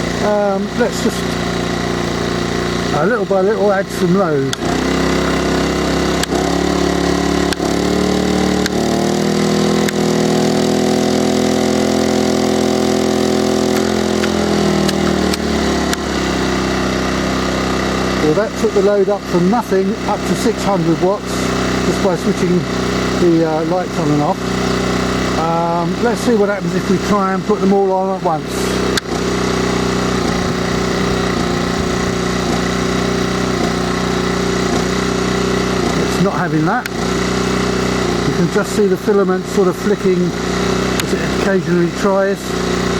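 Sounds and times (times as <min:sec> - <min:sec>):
generator engine running: 0:00.0 - 0:42.9
switch clicks: 0:06.1 - 0:06.4, 0:08.5 - 0:08.8, 0:09.8 - 0:10.0, 0:13.7 - 0:16.1, 0:28.9 - 0:29.1.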